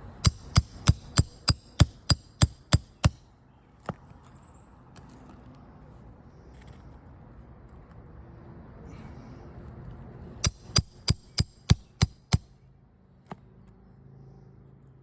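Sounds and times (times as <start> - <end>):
hammer striking metal ringing: 0.2 - 3.2, 10.4 - 12.4.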